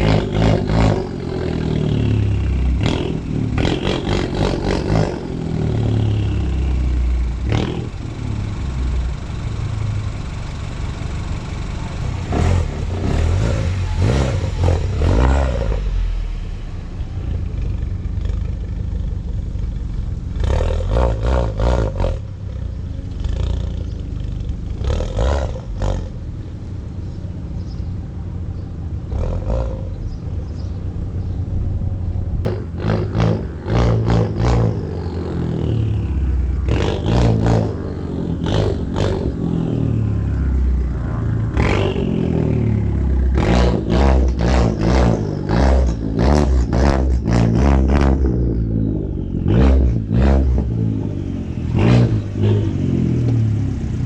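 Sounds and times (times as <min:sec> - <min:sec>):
car engine idling roughly: 0:06.7 - 0:15.0, 0:15.7 - 0:20.4.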